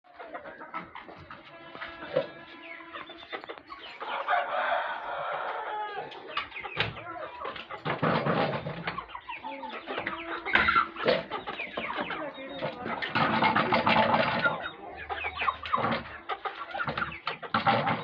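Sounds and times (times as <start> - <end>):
chickens clucking: 0.0 - 18.0
rooster crowing: 4.0 - 6.2.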